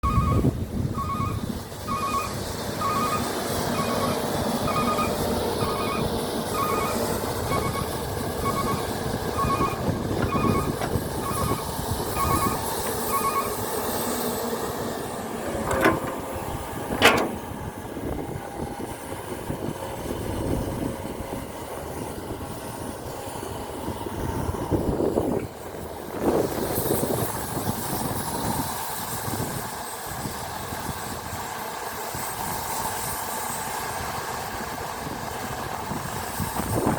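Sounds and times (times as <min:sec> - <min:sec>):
reversing alarm beeping: 0:00.0 - 0:14.1
heavy machinery engine running: 0:00.0 - 0:24.9
sharp knocks: 0:15.5 - 0:17.5.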